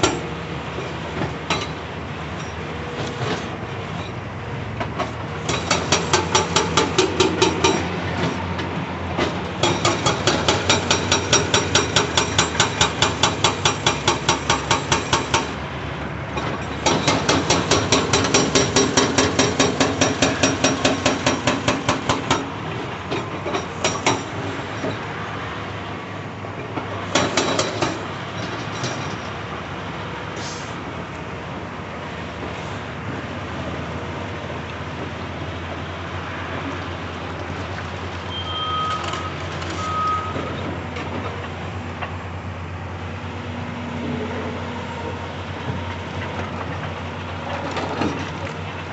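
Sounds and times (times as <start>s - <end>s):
hydraulic breaker hammering rock: 5.4s - 8.4s, 9.2s - 15.6s, 16.4s - 25.0s, 27.1s - 29.0s.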